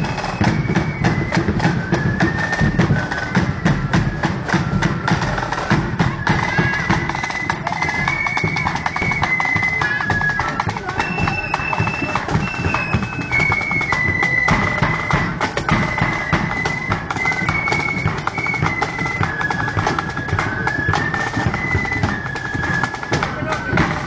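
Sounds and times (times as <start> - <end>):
flute melody: 0.0 - 24.0
snare drum: 0.0 - 24.0.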